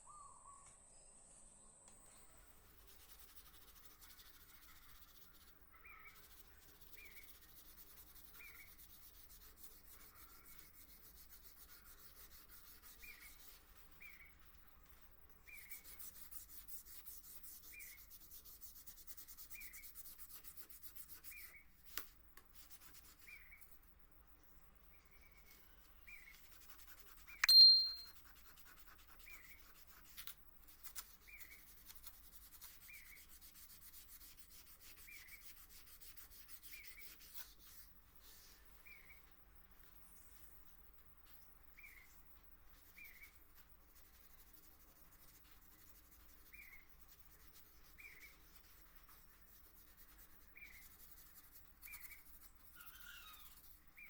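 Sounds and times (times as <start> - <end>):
metallic ding: 27.4 - 28.1.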